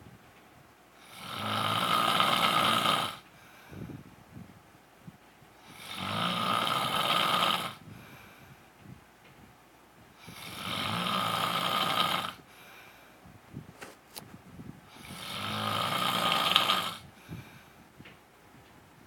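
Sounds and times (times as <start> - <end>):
man snoring: 1.0 - 3.2, 5.6 - 7.8, 10.2 - 12.4, 15.0 - 17.1.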